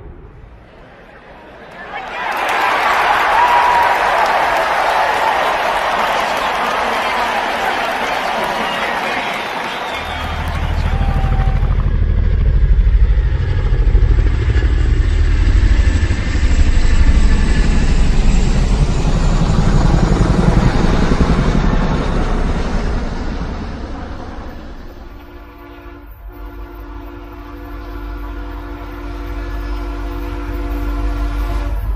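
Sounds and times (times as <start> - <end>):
vehicle engine running: 10.0 - 25.2.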